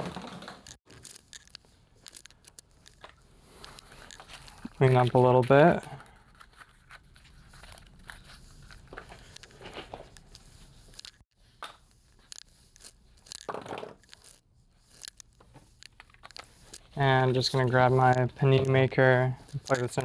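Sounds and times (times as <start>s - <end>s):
items rustling on a workbench: 0.0s - 20.0s
scraping rustle: 12.1s - 20.0s.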